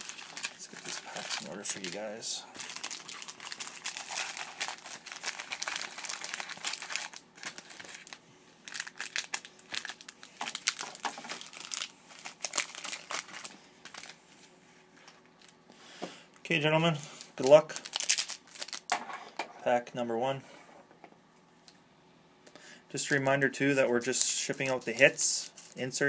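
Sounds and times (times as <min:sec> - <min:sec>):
wrappers crinkling: 0:00.0 - 0:14.3, 0:17.2 - 0:19.0, 0:23.0 - 0:26.0.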